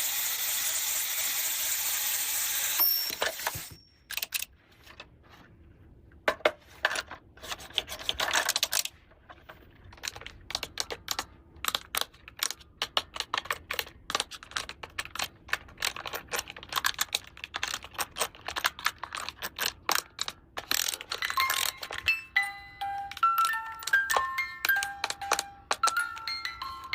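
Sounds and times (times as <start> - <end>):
plastic toy pieces clicking: 2.6 - 4.5, 7.0 - 9.0, 9.8 - 26.9.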